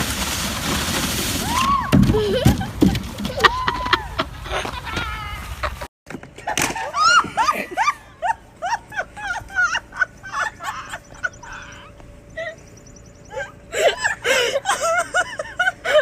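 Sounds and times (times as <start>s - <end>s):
people laughing: 2.1s - 5.8s, 6.5s - 12.6s, 13.3s - 16.0s.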